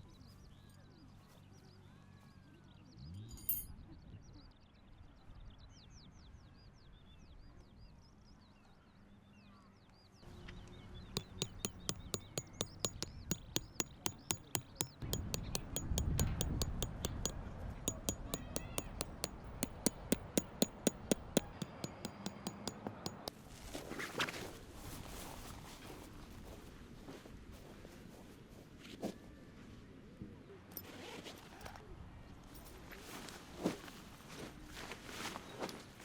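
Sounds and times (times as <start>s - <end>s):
hammer striking metal: 11.2s - 23.3s.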